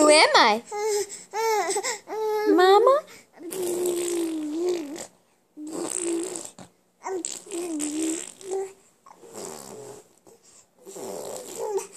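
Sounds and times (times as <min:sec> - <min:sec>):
baby babbling: 0:03.3 - 0:09.3, 0:11.4 - 0:11.9.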